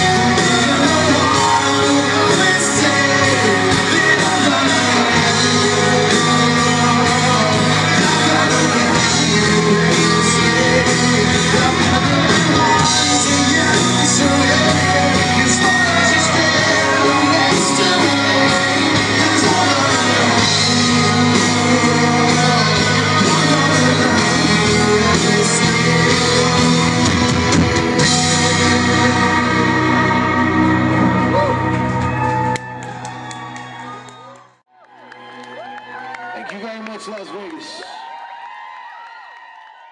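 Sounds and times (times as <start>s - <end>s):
wordless sung vocals: 0.0s - 31.9s
live rock band playing: 0.0s - 34.2s
electric guitar: 0.0s - 34.4s.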